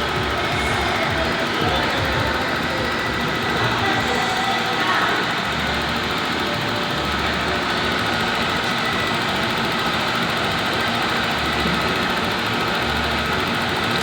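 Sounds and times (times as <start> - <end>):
mechanical running noise: 0.0 - 14.0.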